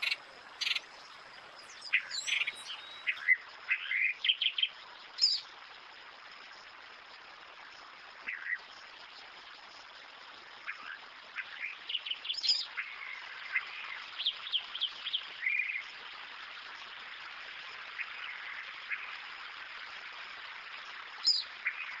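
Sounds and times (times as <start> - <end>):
birds chirping and calling: 0.0 - 0.9, 1.6 - 4.0
steady background hiss: 0.0 - 22.0.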